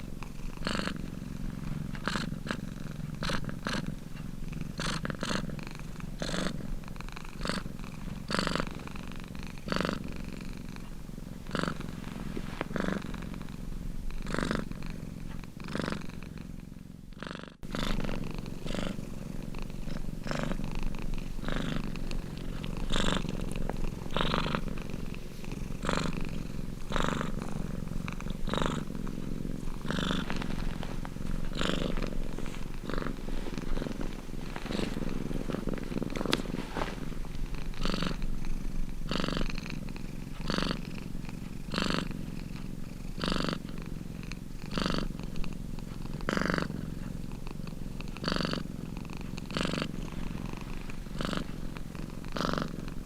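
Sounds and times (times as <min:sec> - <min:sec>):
cat purring: 0:00.0 - 0:53.0.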